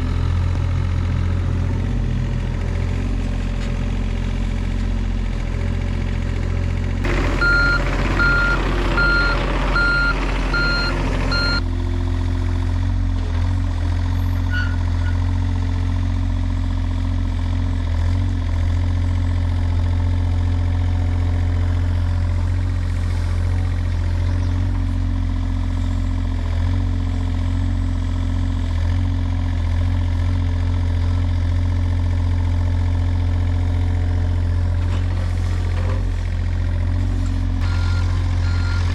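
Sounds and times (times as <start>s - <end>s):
machine engine running: 5.3s - 11.8s
reversing alarm beeps: 7.4s - 11.6s, 37.6s - 38.9s.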